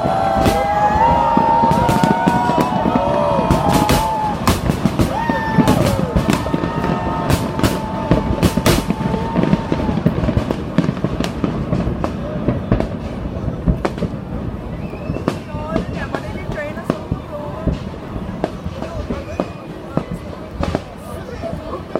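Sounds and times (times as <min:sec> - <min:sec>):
fireworks bangs and crackles: 0:00.0 - 0:21.9
high whistling tone: 0:14.6 - 0:15.5.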